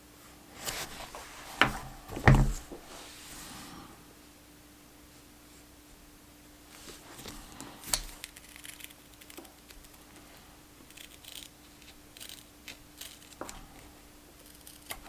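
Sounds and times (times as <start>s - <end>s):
sheet rustling: 0.6s - 3.8s
scissors snipping: 7.5s - 15.0s.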